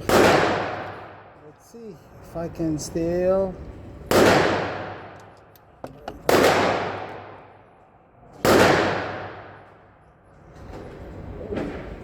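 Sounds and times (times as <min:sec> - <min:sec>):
loud bangs with echo: 0:00.0 - 0:01.3, 0:04.1 - 0:05.2, 0:06.3 - 0:07.5, 0:08.4 - 0:09.6.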